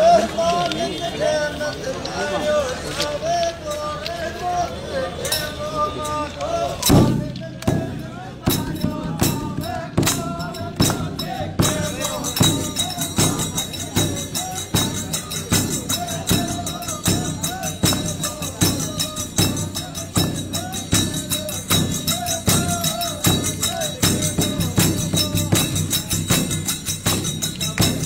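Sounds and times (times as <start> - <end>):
folk singing: 0.0 - 28.0
jingling tambourine percussion: 5.2 - 6.2, 6.8 - 28.0
drum beat: 6.8 - 28.0.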